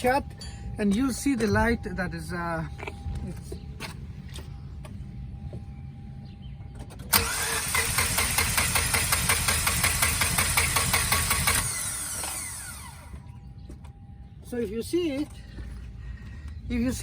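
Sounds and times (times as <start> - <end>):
engine cranking on starter: 7.1 - 13.1.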